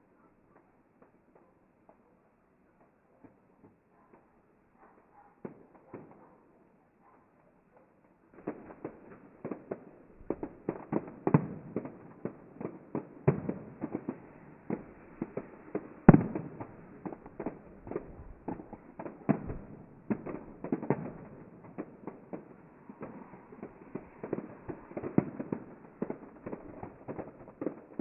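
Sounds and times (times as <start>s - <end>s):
fireworks bangs and crackles: 0.0s - 6.8s, 7.6s - 28.0s.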